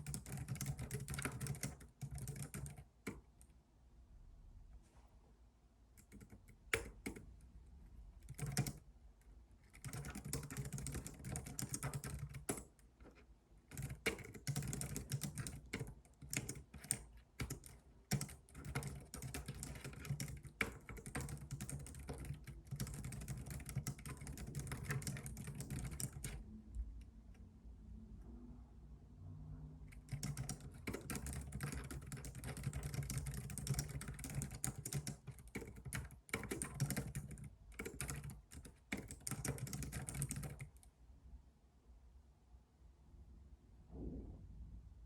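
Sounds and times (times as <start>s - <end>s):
computer keyboard typing: 0.0s - 3.2s, 6.0s - 7.5s, 8.2s - 8.9s, 9.6s - 26.4s, 29.9s - 40.9s.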